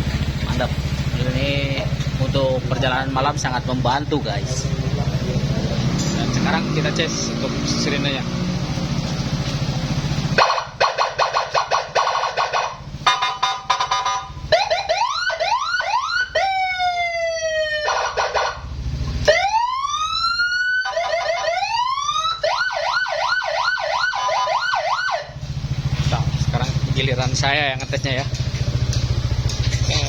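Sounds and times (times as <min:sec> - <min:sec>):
scooter siren wailing and yelping: 0:00.0 - 0:01.2, 0:06.6 - 0:25.9, 0:28.2 - 0:29.8.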